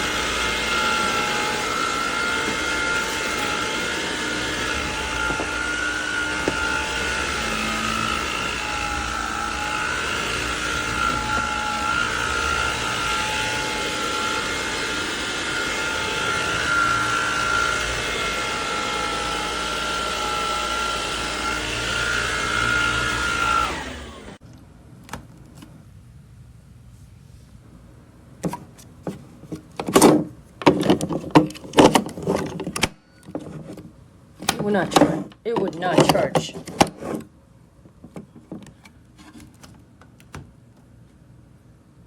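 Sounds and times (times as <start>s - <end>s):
cordless vacuum whine: 0.0s - 24.4s.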